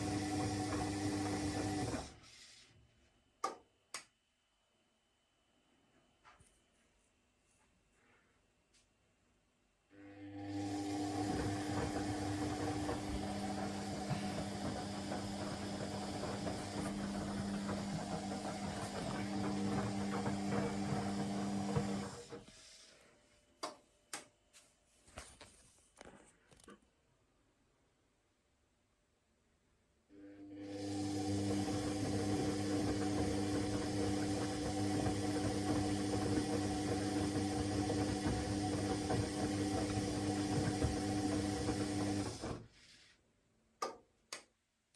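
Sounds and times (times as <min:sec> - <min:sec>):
washing machine motor hum: 0:00.0 - 0:02.4, 0:10.0 - 0:22.6, 0:30.2 - 0:42.7.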